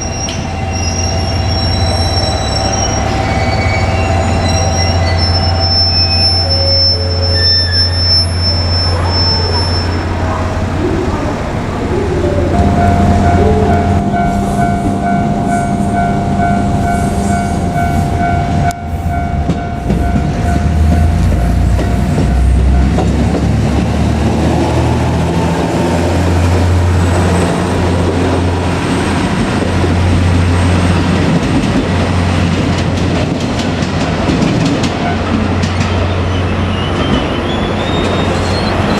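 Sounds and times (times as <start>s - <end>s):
crossing warning bell: 0.0s - 38.9s
diesel railcar engine: 0.0s - 38.9s.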